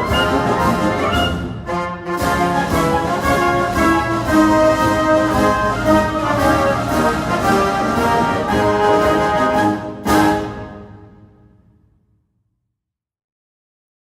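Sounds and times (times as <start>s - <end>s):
orchestral music with brass: 0.0s - 11.6s.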